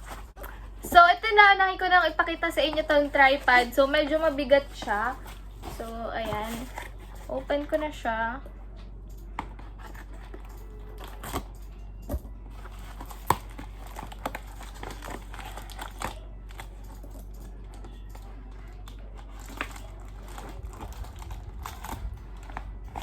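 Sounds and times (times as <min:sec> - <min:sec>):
packaging crinkling: 0:12.5 - 0:23.0
packing tape tearing: 0:12.6 - 0:17.0.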